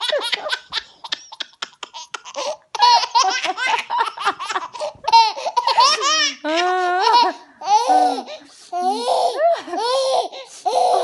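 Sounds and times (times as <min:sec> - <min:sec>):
baby laughing: 0:00.0 - 0:11.0.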